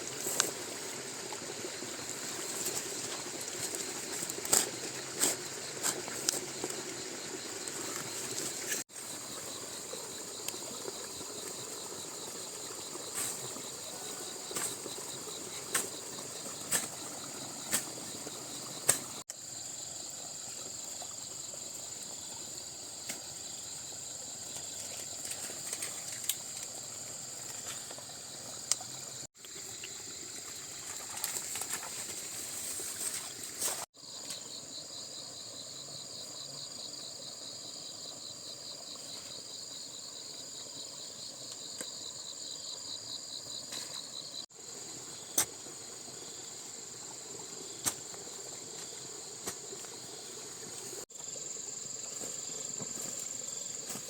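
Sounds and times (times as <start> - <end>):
high-pitched insect chorus: 0.0 - 54.0.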